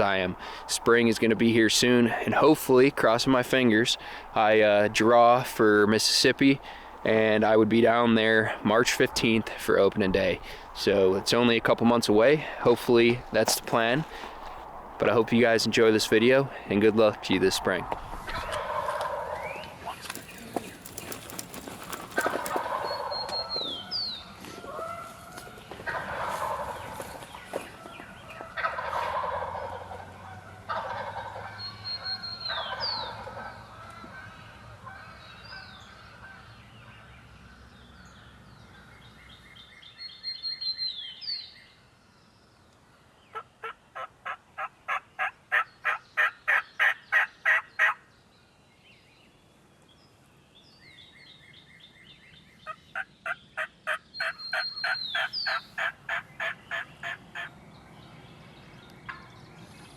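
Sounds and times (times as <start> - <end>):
wild turkeys calling: 18.3 - 35.1, 43.3 - 48.0, 52.6 - 57.6, 59.1 - 59.4.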